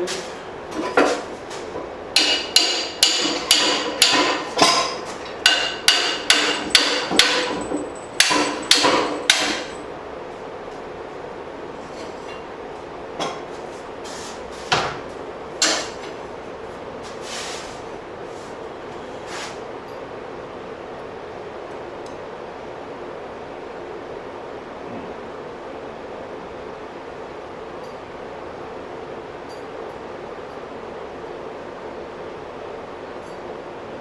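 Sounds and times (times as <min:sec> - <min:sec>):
hammer ringing on steel: 0:02.2 - 0:09.9.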